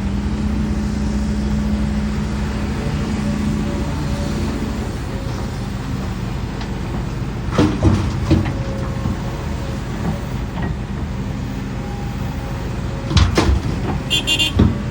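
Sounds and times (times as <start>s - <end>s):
excavator diesel engine running: 0.0s - 14.9s
sharp knocks and clanks: 13.1s - 14.9s.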